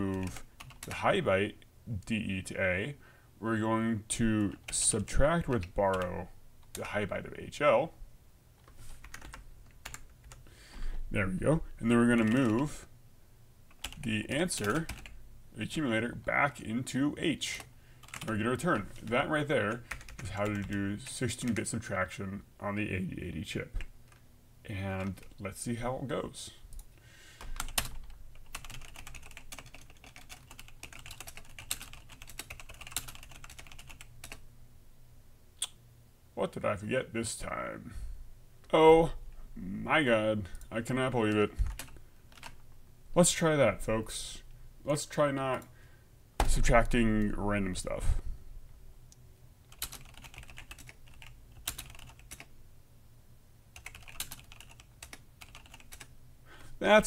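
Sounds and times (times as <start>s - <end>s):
rapid typing on a keyboard: 0.2s - 1.0s, 9.0s - 10.4s, 12.1s - 12.7s, 13.7s - 15.2s, 18.0s - 20.8s, 27.4s - 34.4s, 41.6s - 42.6s, 49.7s - 52.5s, 53.8s - 56.1s.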